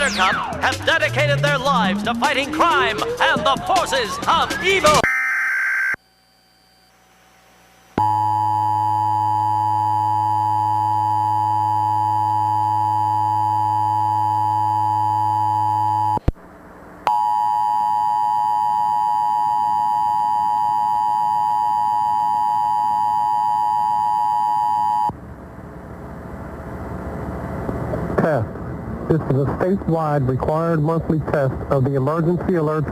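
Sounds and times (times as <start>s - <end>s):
loud dual tone alert signal: 1.1s - 2.5s.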